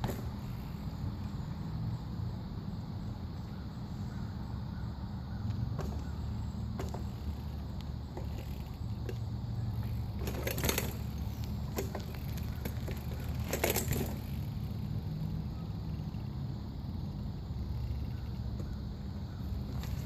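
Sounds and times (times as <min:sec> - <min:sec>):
bmx bike rumble: 0:00.0 - 0:20.0
bike tyres scraping: 0:04.8 - 0:20.0.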